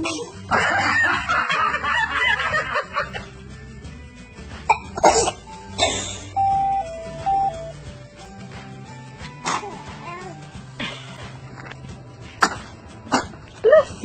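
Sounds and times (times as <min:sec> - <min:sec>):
light background music: 0:00.0 - 0:14.0
baby sneezing: 0:04.7 - 0:06.2, 0:09.4 - 0:10.4.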